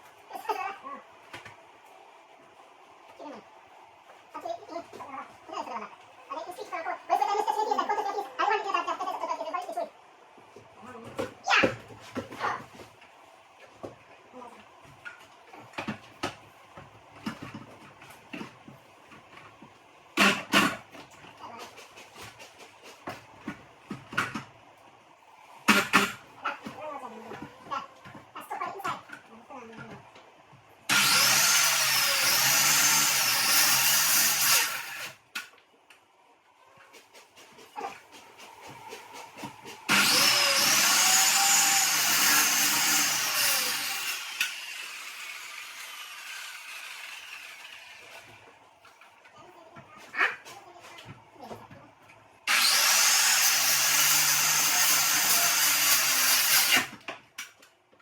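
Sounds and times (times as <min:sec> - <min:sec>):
power tool motor running: 0:30.9 - 0:35.2, 0:39.9 - 0:48.3, 0:52.5 - 0:56.9.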